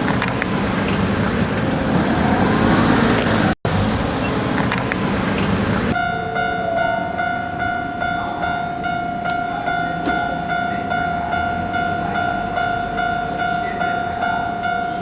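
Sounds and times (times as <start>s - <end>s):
railroad crossing bell ringing: 5.9s - 15.0s.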